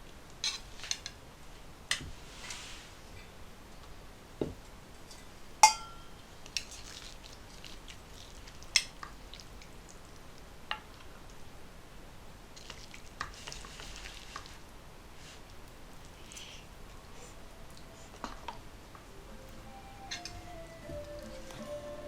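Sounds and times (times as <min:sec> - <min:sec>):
cutlery clinking against dish: 0:05.1 - 0:06.8, 0:20.1 - 0:20.4.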